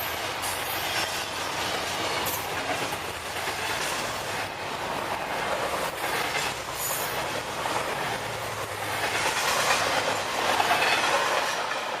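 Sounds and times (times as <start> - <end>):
freight train wheels clattering: 0.0 - 12.0.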